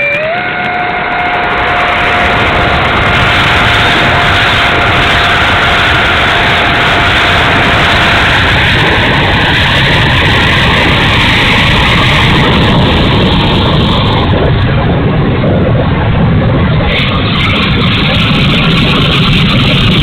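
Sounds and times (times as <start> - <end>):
electric ducted fans rushing: 0.0 - 20.0.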